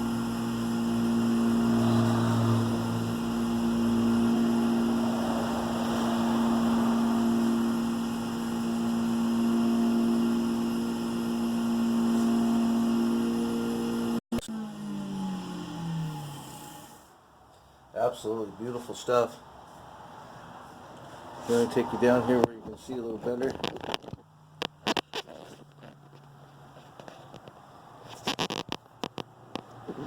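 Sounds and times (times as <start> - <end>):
wood lathe motor humming: 0.0 - 17.1.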